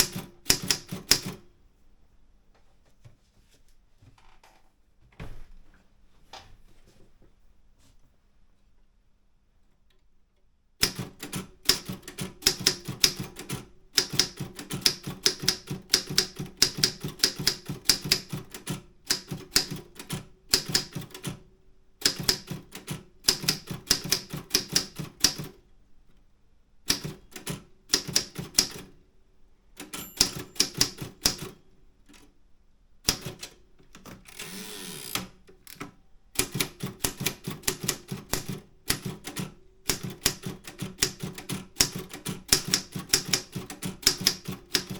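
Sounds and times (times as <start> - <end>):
typewriter key strikes: 0.0 - 1.4, 10.8 - 21.4, 22.0 - 25.6, 26.9 - 28.9, 29.8 - 31.6, 33.1 - 34.2, 35.1 - 44.9.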